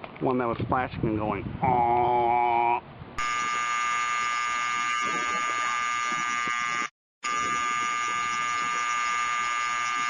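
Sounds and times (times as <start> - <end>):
fire alarm horn buzzing: 3.2 - 10.0.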